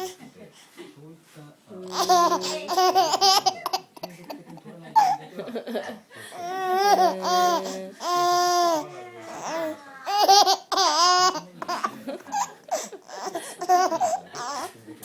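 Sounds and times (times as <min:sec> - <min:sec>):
baby laughing: 0:01.9 - 0:04.4, 0:05.0 - 0:05.8, 0:06.4 - 0:14.7.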